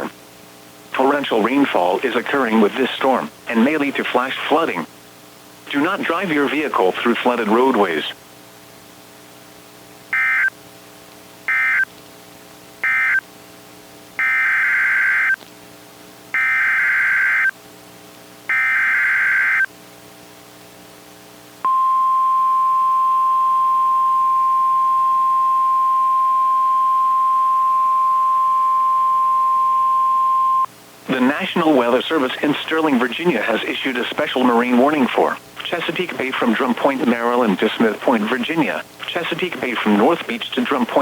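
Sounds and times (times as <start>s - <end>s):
faint low hum: 0.0s - 41.0s
steady single-pitch alarm tone: 10.1s - 10.5s, 11.5s - 11.9s, 12.8s - 13.2s, 14.2s - 15.4s, 16.4s - 17.5s, 18.5s - 19.7s, 21.6s - 30.7s.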